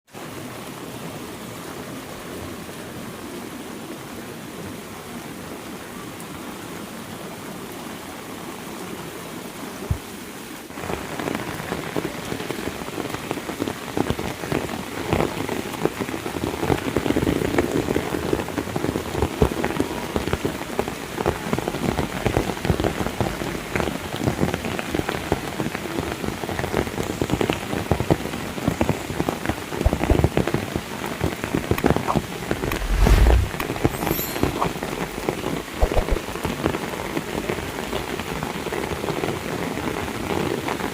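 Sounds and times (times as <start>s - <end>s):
heavy rain: 0.1s - 40.9s
low rumble: 32.6s - 35.3s.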